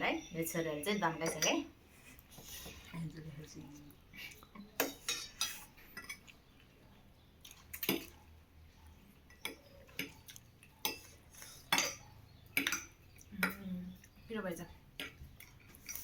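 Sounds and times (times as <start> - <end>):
cutlery clinking on plates: 1.0 - 1.7, 4.7 - 6.4, 9.3 - 13.6, 15.0 - 16.0.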